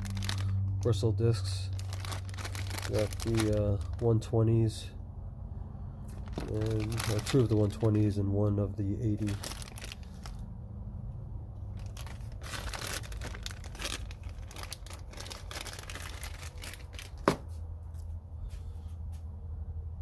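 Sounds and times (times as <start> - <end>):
packaging crinkling and tearing: 0.0 - 1.0, 1.6 - 4.0, 6.1 - 8.1, 9.1 - 10.4, 11.7 - 17.4.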